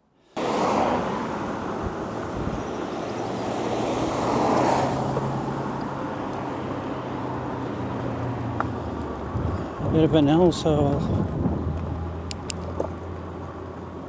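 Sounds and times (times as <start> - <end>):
road noise: 0.3 - 14.0
wind noise: 1.8 - 3.0, 9.2 - 12.7.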